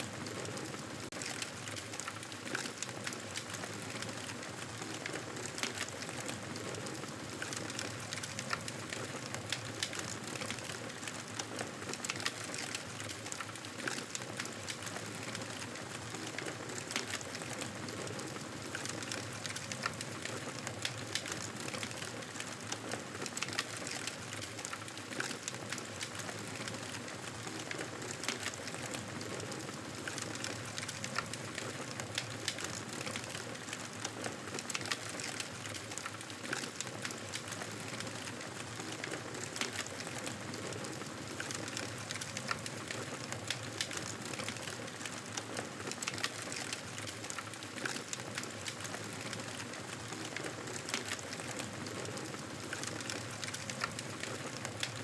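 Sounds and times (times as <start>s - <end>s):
burning wood crackling and popping: 0.1s - 55.0s.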